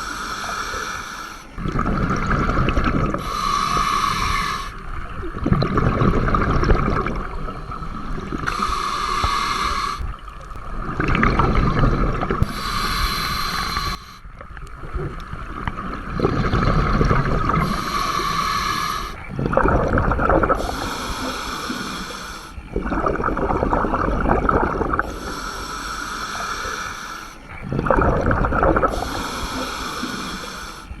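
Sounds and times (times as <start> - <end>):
regulator inhale hiss: 0.0 - 1.7, 3.1 - 5.1, 8.2 - 10.5, 11.5 - 14.4, 16.4 - 19.3, 20.6 - 22.7, 25.0 - 27.6, 28.8 - 31.0
exhaled bubbles gurgling: 0.0 - 31.0.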